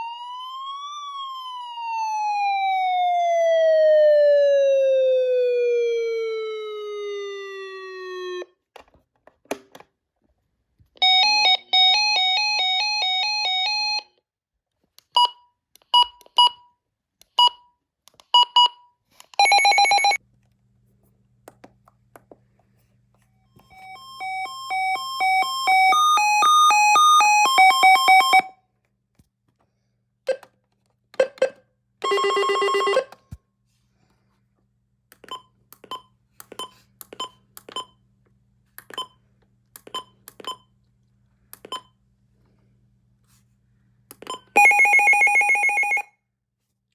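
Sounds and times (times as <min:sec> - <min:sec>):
electronic siren test tones: 0:23.6 - 0:28.5.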